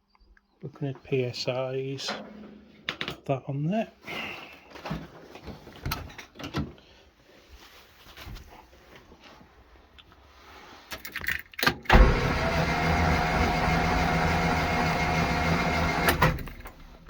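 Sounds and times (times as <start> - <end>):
engine cranking on starter motor: 11.7 - 17.0.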